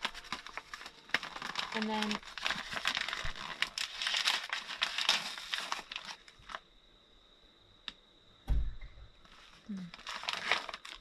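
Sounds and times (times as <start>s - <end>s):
popcorn bag crinkling: 0.0s - 6.6s, 9.3s - 11.0s
heavy thump: 8.5s - 9.0s.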